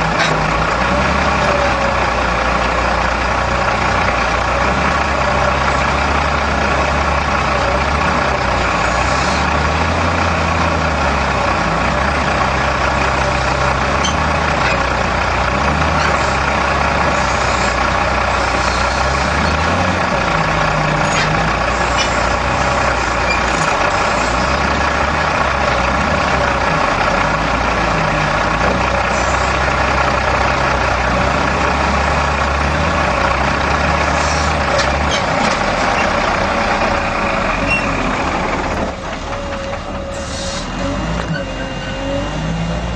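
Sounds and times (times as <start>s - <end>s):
heavy machine engine running: 0.0s - 42.9s.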